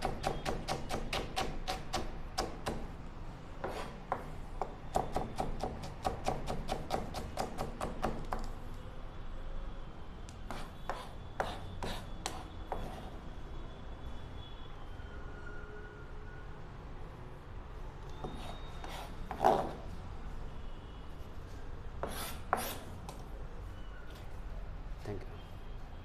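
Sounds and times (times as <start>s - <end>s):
knife chopping on cutting board: 0.0s - 2.8s, 3.6s - 8.4s.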